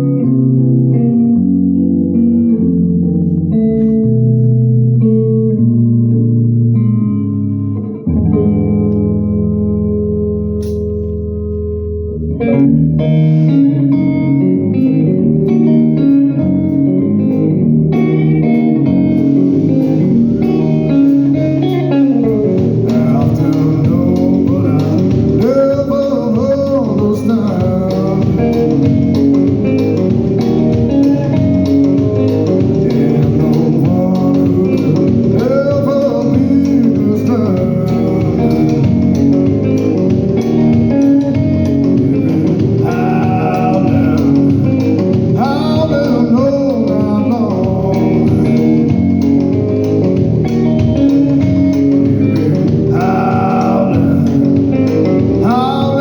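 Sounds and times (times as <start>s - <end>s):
blues band playing: 0.0s - 56.0s.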